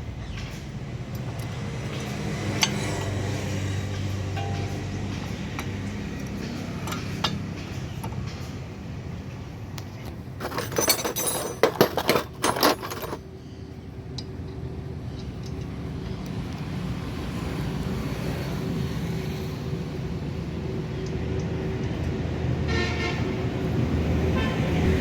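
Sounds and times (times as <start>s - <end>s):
metal objects clinking: 3.9s - 7.4s, 10.4s - 13.2s.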